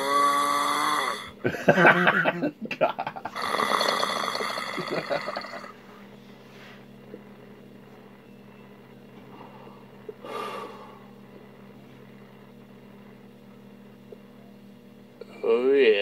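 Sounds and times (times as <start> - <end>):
man snoring: 0.0 - 1.4, 3.3 - 5.8, 10.2 - 11.1
steady low hum: 0.0 - 16.0.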